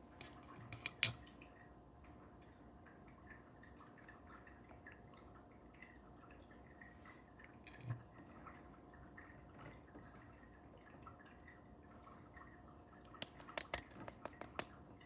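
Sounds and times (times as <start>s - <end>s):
small clicks and taps of lock parts: 0.2s - 1.2s, 7.7s - 8.0s, 13.2s - 14.7s.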